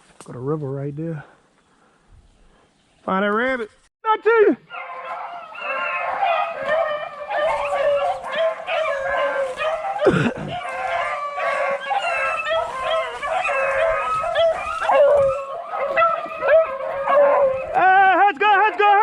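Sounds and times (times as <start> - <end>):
dogs baying and howling: 4.7 - 19.0.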